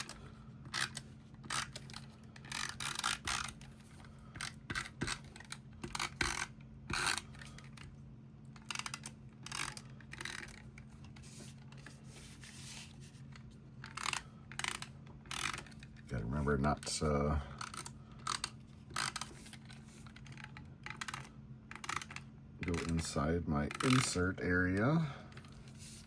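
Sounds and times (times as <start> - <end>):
adhesive roller scraping and clicking: 0.0 - 26.0.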